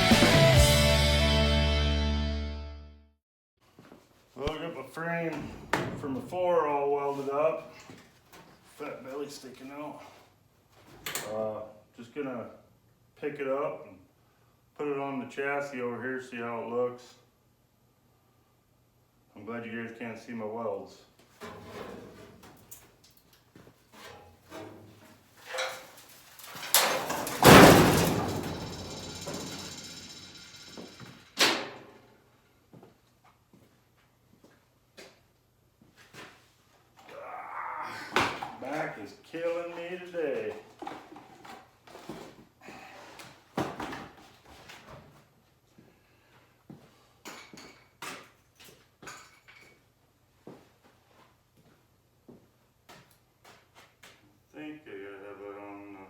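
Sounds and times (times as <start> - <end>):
sharp metal clank: 26.7 - 31.8
loud metal clang ringing: 27.0 - 31.8.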